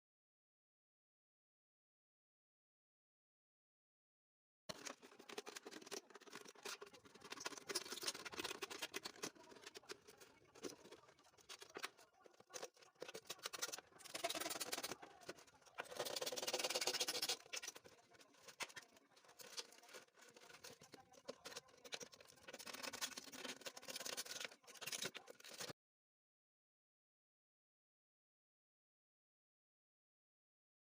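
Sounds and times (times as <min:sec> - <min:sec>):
crackling and clicking handling noises: 0:04.7 - 0:25.8.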